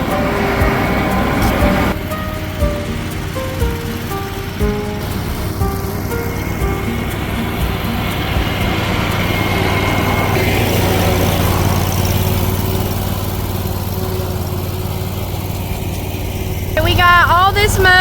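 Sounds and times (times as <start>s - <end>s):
lawn mower engine running: 0.0s - 18.0s.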